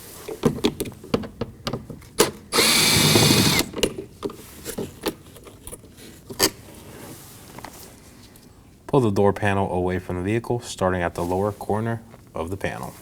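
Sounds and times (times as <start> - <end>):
power driver running: 2.5 - 3.8.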